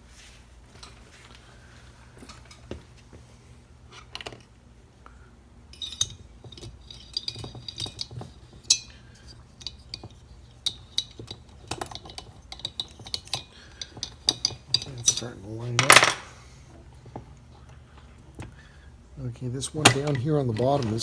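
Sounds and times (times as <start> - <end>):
metal parts and tools clinking: 5.7 - 16.4, 19.7 - 21.0.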